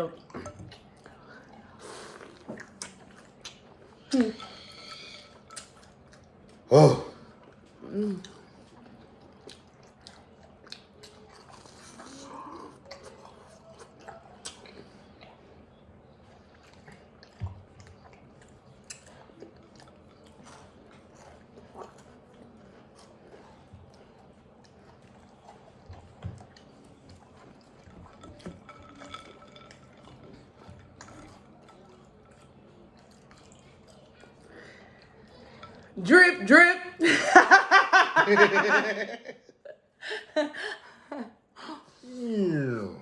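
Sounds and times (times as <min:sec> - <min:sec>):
wet chewing: 0:00.1 - 0:36.0.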